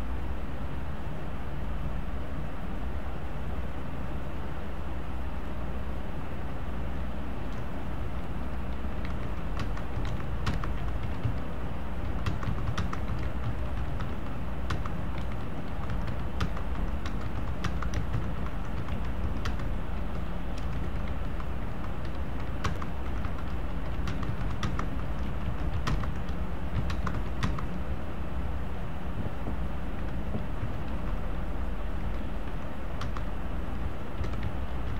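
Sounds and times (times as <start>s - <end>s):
steady low rumble: 6.2s - 34.9s
computer keyboard typing: 8.4s - 27.8s, 29.5s - 34.9s.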